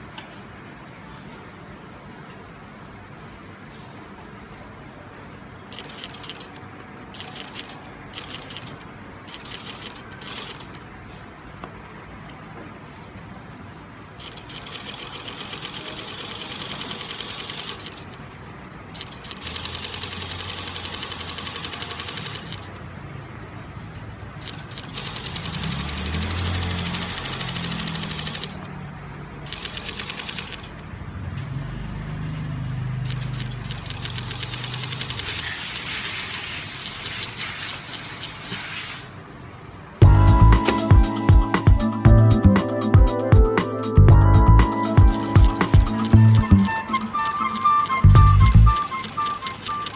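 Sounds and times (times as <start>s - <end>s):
sewing machine stitching: 19.0s - 22.6s
loud music: 40.0s - 49.4s.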